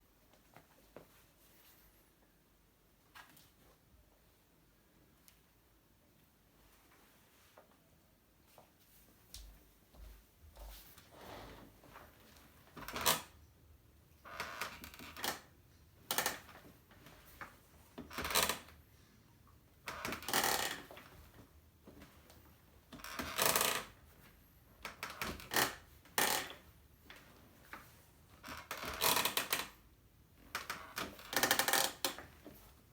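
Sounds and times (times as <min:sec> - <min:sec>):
office chair creaking: 0:11.0 - 0:13.4, 0:14.2 - 0:15.5, 0:16.1 - 0:18.8, 0:19.8 - 0:22.2, 0:22.8 - 0:24.2, 0:24.8 - 0:29.8, 0:30.4 - 0:32.8.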